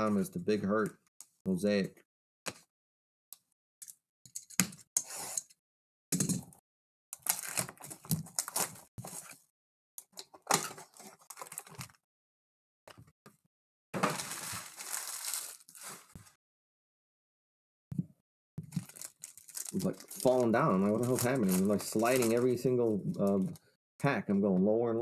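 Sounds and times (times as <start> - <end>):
foil wrappers tearing and crinkling: 7.2 - 9.4, 10.6 - 12.0, 14.0 - 16.3, 18.7 - 23.6.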